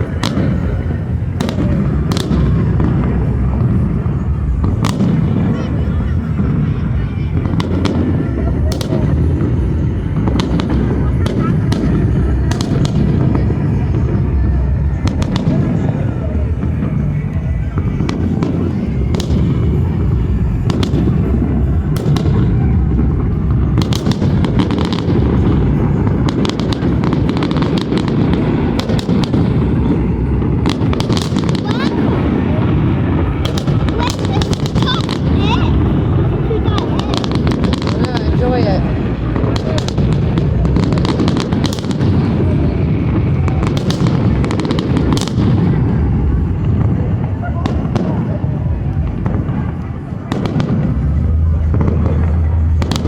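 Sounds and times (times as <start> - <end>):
fireworks crackling pops: 0.0 - 53.0
fireworks rumbling: 0.0 - 53.0.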